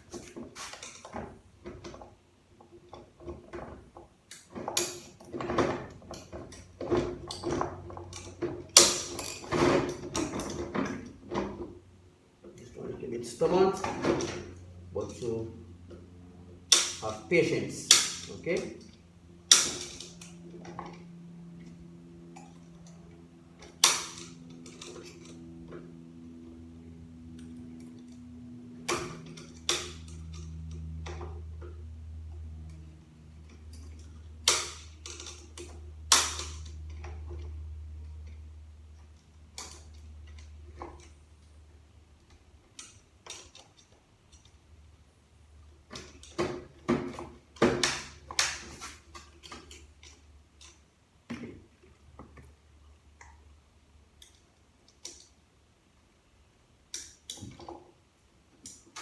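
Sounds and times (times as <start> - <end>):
low steady hum: 0.0 - 59.0.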